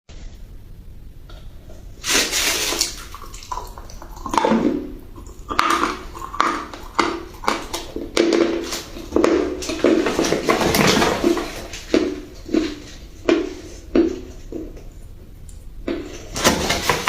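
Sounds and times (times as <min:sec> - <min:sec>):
crunching and chewing: 0:03.0 - 0:17.0.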